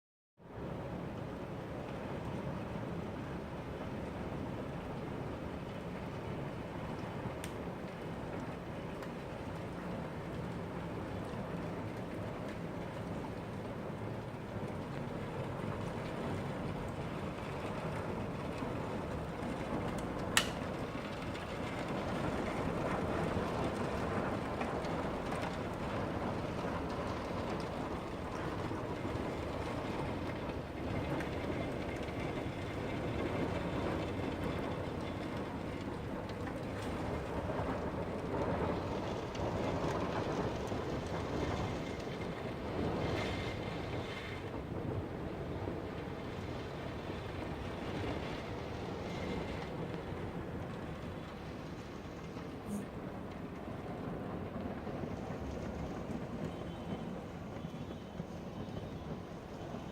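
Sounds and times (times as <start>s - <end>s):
steady rain falling: 0.4s - 59.9s.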